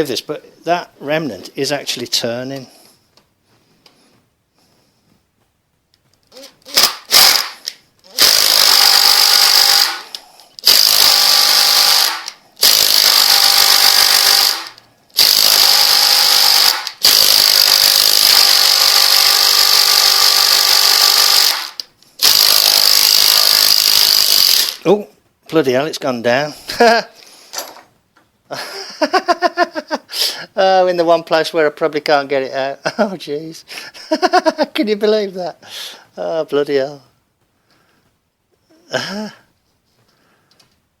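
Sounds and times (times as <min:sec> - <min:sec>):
handheld power tool running: 0:06.7 - 0:24.8.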